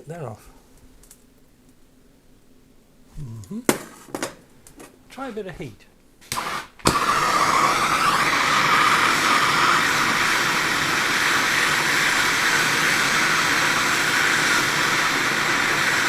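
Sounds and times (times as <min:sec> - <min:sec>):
blowtorch flame hissing: 0:06.2 - 0:16.0.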